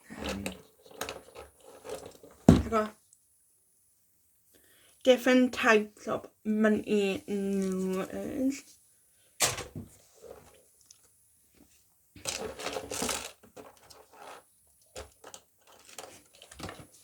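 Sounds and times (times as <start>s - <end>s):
plastic rustling: 12.2s - 17.0s.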